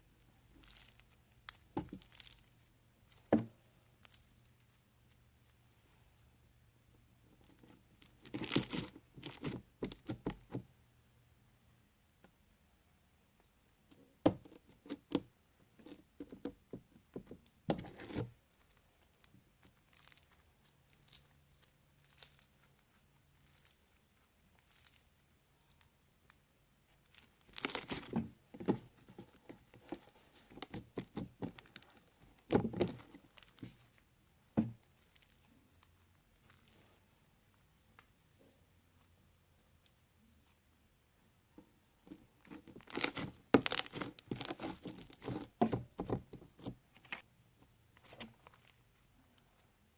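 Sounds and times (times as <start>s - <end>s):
crunchy slime crackling: 0.1s - 4.8s, 7.4s - 10.5s, 17.7s - 25.9s, 26.9s - 37.0s, 42.3s - 47.2s.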